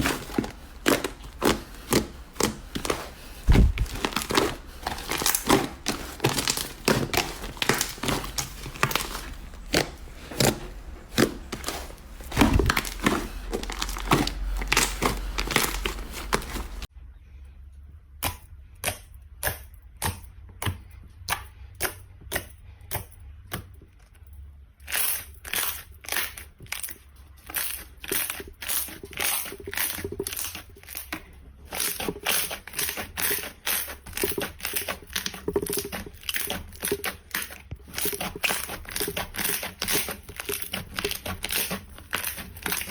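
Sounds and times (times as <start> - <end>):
slime crackling and popping: 0.0 - 16.9, 27.5 - 42.9.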